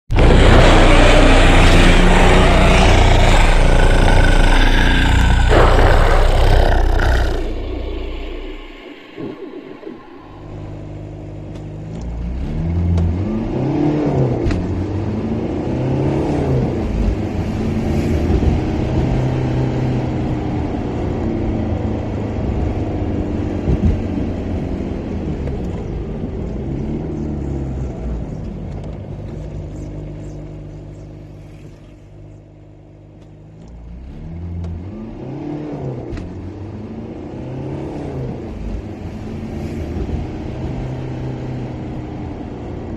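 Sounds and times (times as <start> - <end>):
car engine revving: 0.1 - 20.4.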